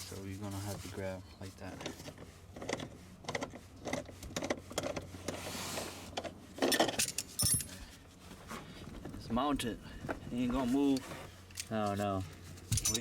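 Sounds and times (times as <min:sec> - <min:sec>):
hand tools clicking and scraping: 0:01.6 - 0:08.6, 0:10.5 - 0:13.0.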